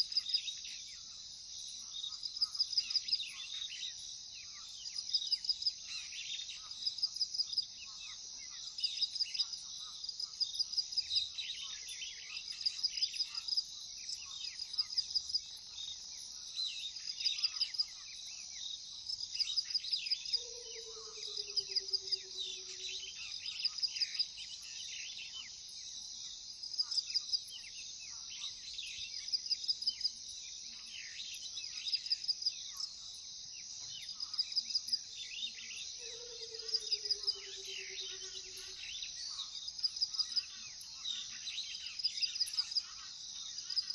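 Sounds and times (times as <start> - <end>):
crickets trilling: 0.0 - 43.9
high insect hum: 0.0 - 43.9
bird chirps: 1.8 - 25.6, 26.2 - 43.9.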